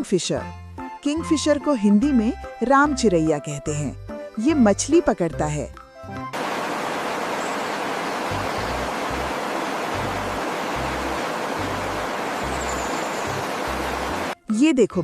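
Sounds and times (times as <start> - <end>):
steady rushing hiss: 6.4 - 14.4.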